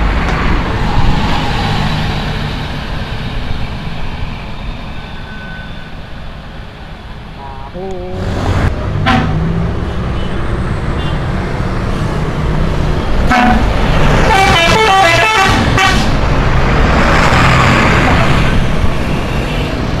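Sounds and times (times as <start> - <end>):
bus engine rumble: 0.0 - 20.0
rushing noise: 0.0 - 20.0
traffic: 0.0 - 20.0
musical bus horn: 9.0 - 9.4, 13.3 - 16.1.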